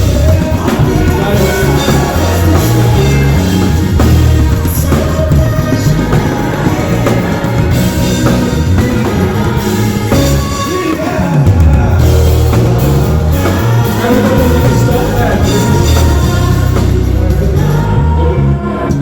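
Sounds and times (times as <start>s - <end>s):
heavy bass line: 0.0s - 19.0s
live band music: 0.0s - 19.0s
person singing: 0.0s - 19.0s.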